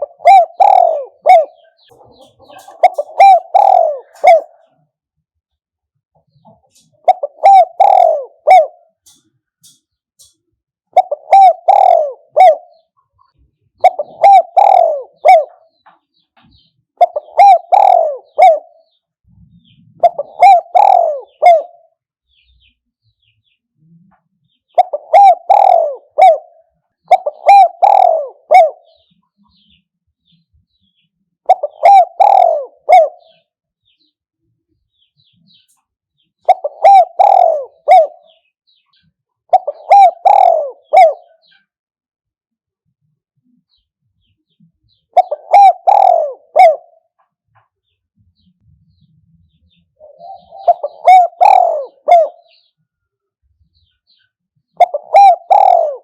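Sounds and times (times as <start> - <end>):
dove cooing: 0.0 - 5.0, 6.3 - 10.3, 10.9 - 15.9, 16.5 - 22.4, 23.8 - 29.7, 31.4 - 33.5, 36.4 - 38.8, 39.4 - 41.7, 44.9 - 47.2, 49.8 - 52.8, 54.7 - 56.0.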